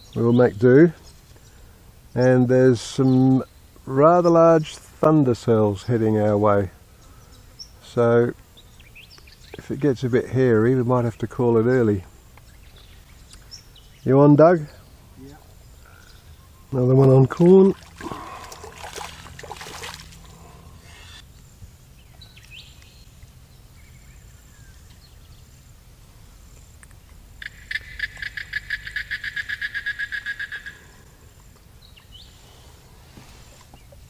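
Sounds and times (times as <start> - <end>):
frog trilling: 27.4 - 30.9.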